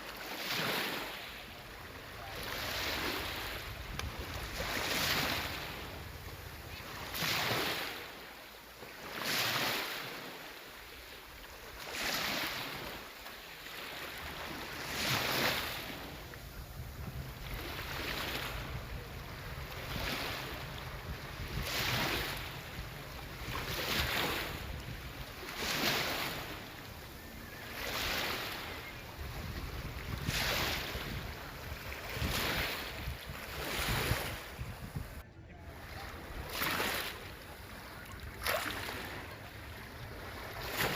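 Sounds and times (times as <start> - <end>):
sea waves washing ashore: 0.0 - 40.9
wind rumbling on microphone: 2.1 - 7.7, 14.2 - 38.4.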